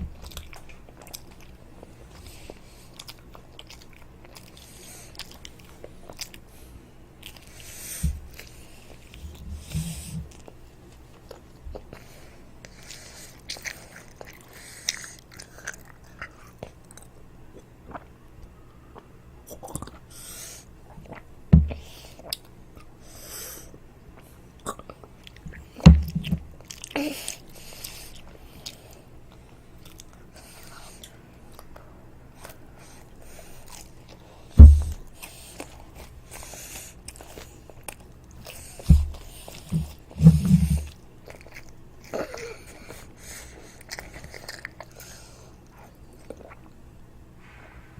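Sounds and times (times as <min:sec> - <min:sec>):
low thumps: 0:25.8 - 0:26.5, 0:34.6 - 0:35.0, 0:38.8 - 0:40.9.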